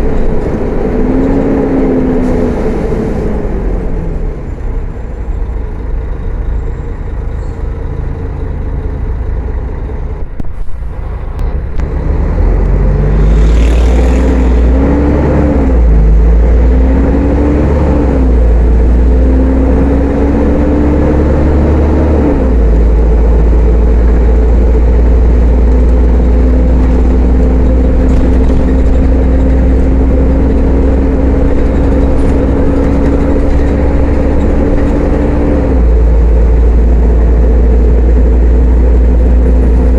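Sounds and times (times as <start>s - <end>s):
bus diesel engine pulling away: 0.0s - 39.9s.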